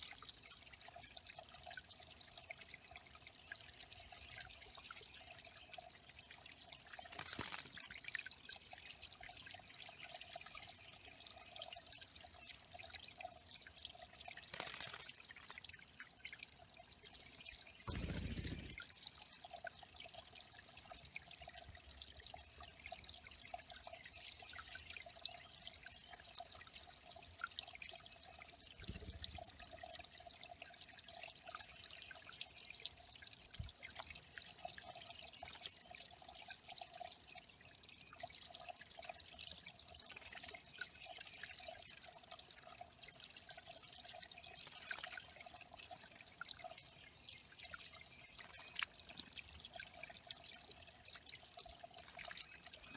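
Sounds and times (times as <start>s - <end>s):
water trickling and dripping: 0.0s - 52.9s.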